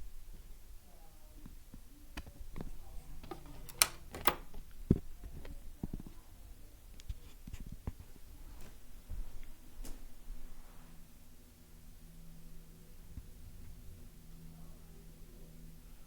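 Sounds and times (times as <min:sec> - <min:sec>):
sharp clicks: 0:03.2 - 0:04.4.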